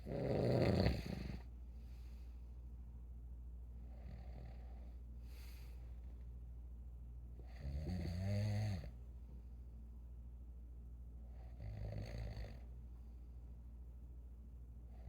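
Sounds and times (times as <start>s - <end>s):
person snoring: 0.0s - 1.5s
steady low hum: 0.0s - 15.0s
soft breath: 1.1s - 2.7s, 3.8s - 6.3s.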